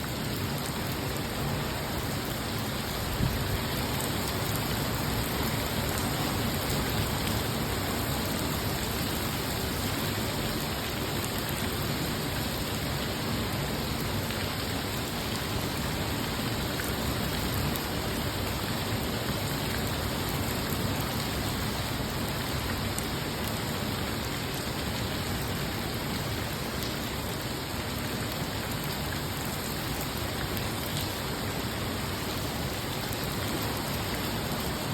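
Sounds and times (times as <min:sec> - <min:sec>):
steady rain falling: 0:00.0 - 0:34.9.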